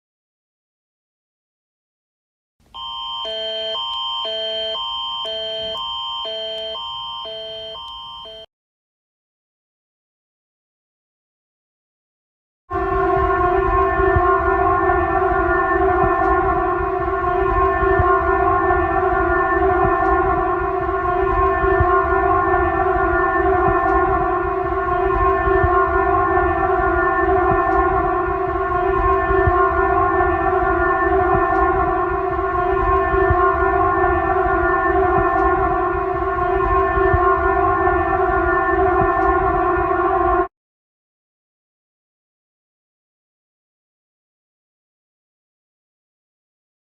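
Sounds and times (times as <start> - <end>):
steady alarm siren tone: 2.7 - 8.5, 12.7 - 40.5.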